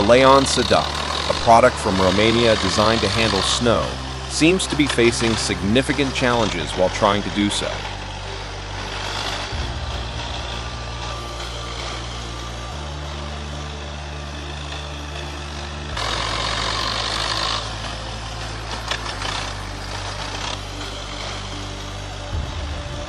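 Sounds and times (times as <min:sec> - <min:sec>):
truck engine running: 0:00.0 - 0:23.0.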